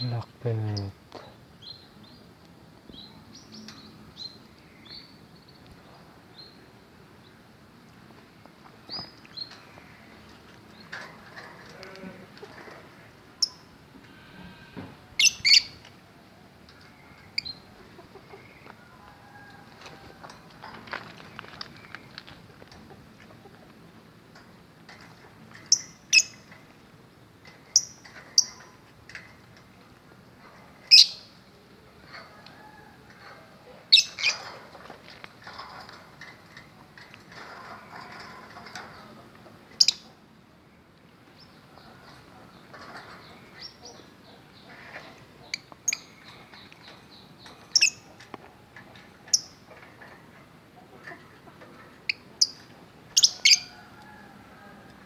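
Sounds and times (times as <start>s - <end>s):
birds chirping and chattering: 0.0s - 7.8s, 8.4s - 19.1s, 21.0s - 32.2s, 33.1s - 53.9s
birds squawking: 15.2s - 15.8s.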